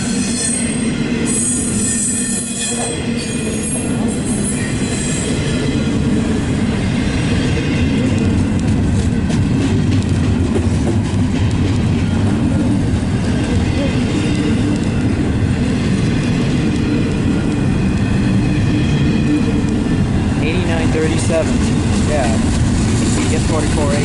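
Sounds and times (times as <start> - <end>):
steel wheels squealing: 0.0 - 8.1
freight train rumbling: 0.0 - 24.0
wheels clacking over rails: 2.7 - 24.0.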